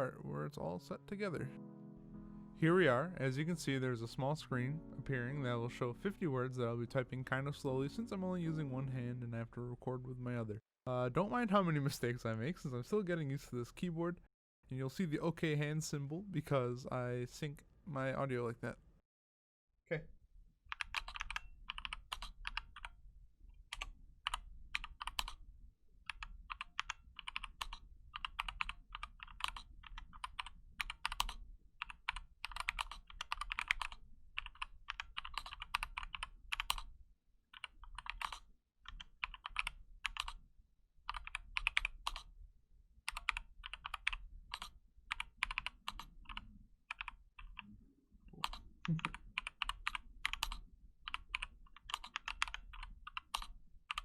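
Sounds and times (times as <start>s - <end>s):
mechanical keyboard typing: 20.7s - 22.9s, 23.7s - 25.4s, 26.1s - 36.9s, 37.6s - 40.4s, 41.1s - 42.3s, 43.1s - 47.6s, 48.4s - 54.0s.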